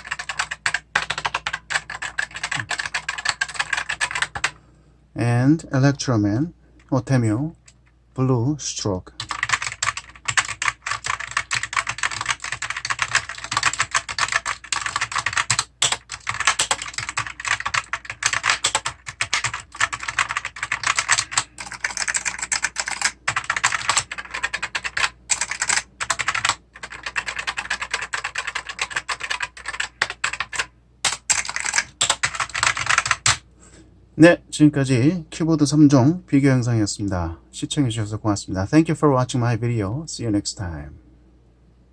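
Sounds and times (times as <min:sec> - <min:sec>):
clicky mechanical keyboard typing: 0:00.0 - 0:04.6, 0:09.2 - 0:33.4.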